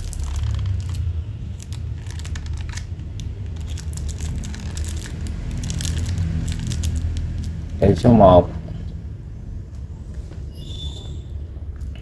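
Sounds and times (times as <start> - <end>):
packaging crinkling and rustling: 0.0 - 7.8.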